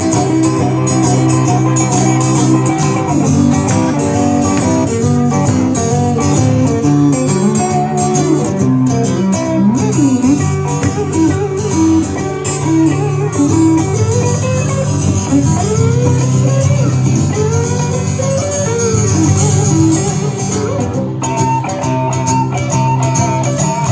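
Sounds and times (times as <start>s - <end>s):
live trio music led by guitar: 0.0s - 23.9s.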